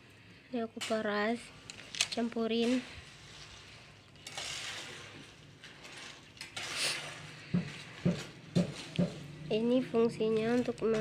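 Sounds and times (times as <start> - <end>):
juice squelching and spattering: 1.6 - 9.3.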